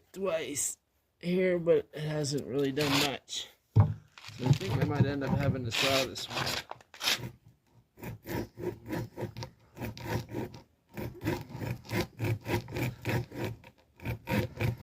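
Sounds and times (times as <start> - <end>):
sawing coconut husk: 2.8 - 3.2, 4.2 - 14.8.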